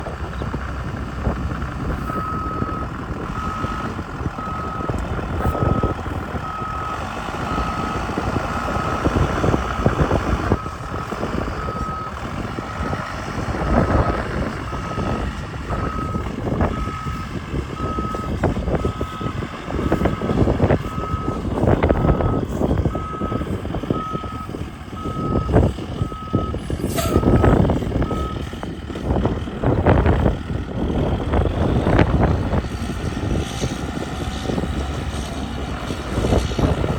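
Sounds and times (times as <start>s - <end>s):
bus engine running: 0.0s - 36.9s
reversing alarm beeps: 14.7s - 17.2s, 17.8s - 20.3s, 20.9s - 28.4s.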